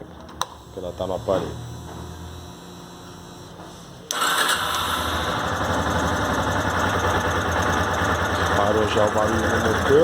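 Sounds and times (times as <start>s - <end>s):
motorcycle engine starting and running: 4.1s - 10.0s.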